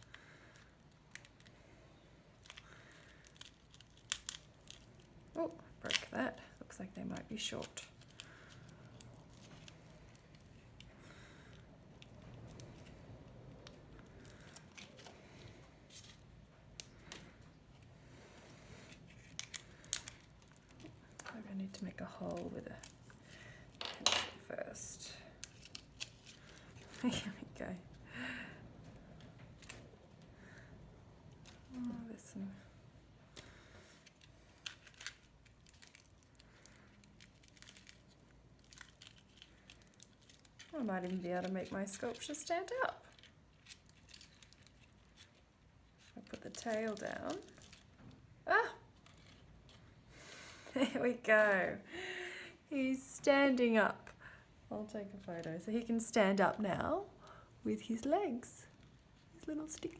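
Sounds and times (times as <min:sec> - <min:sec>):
foil crinkling: 0:00.0 - 0:23.8, 0:24.7 - 0:27.8, 0:33.3 - 0:48.2, 0:48.8 - 0:50.0.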